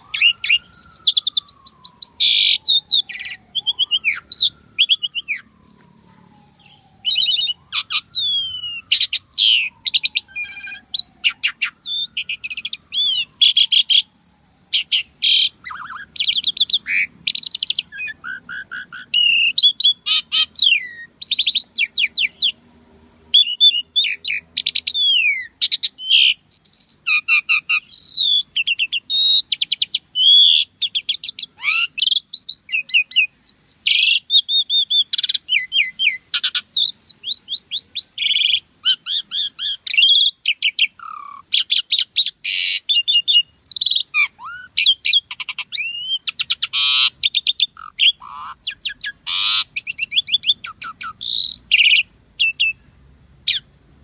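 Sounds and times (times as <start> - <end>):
starling singing: 0.0 - 53.7.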